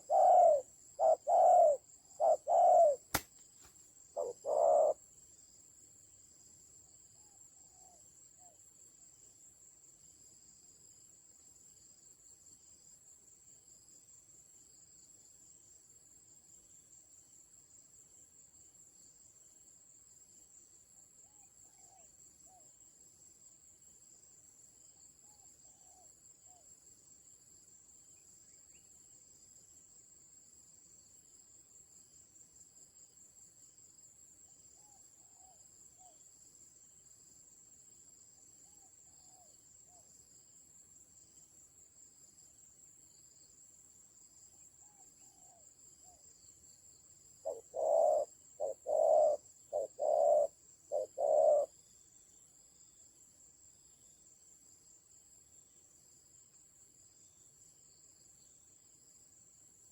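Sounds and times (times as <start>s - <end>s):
distant bird calls: 0.0s - 3.2s, 4.2s - 5.0s.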